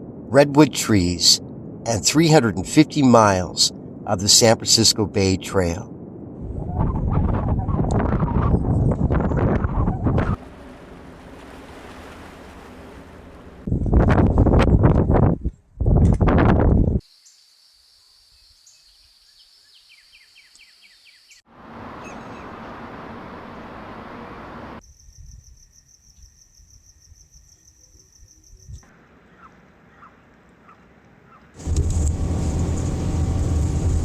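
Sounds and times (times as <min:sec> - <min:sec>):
faint bird chirps: 0:17.1 - 0:22.9, 0:24.8 - 0:31.5
high-pitched insect trill: 0:24.8 - 0:28.7
rushing noise: 0:31.6 - 0:34.0.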